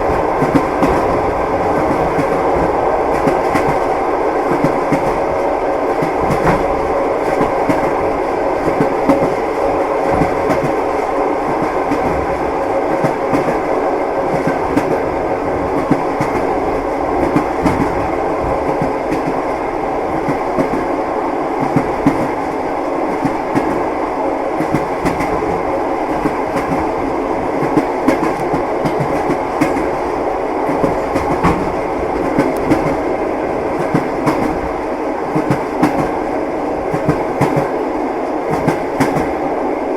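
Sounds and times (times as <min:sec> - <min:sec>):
train rumble: 0:00.0 - 0:39.9
train wheels clicking over rail joints: 0:15.7 - 0:19.4, 0:30.7 - 0:33.1.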